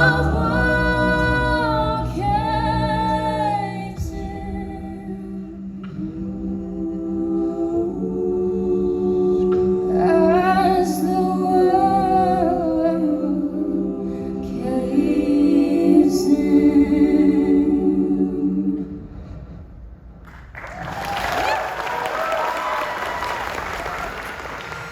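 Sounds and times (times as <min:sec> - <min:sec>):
vocal group singing chords: 0:00.0 - 0:19.9.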